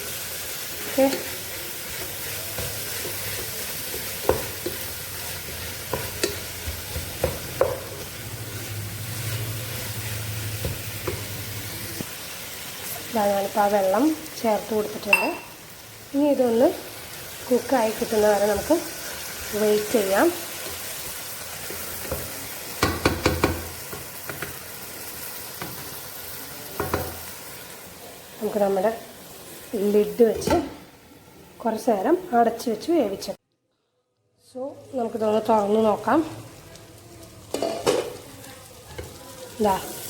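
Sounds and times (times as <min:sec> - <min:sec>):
masala sizzling in a pan: 0:00.0 - 0:33.4, 0:34.0 - 0:40.0
utensil knocking against pan: 0:05.9 - 0:07.9, 0:22.2 - 0:24.6.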